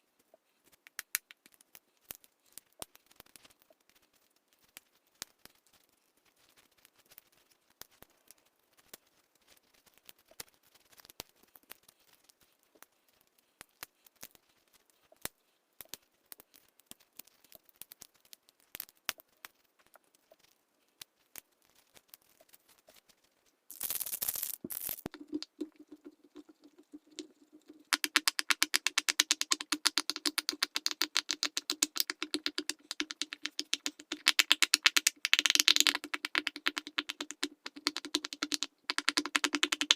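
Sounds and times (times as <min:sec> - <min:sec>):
fidget toy bubbles popping: 0:23.7 - 0:39.9.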